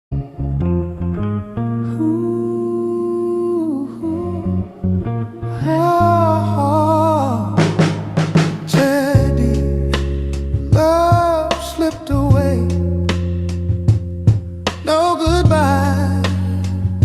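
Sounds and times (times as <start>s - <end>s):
bass and guitar: 0.1s - 17.0s
wordless humming vocal: 1.9s - 8.0s, 8.6s - 13.2s, 14.8s - 17.0s.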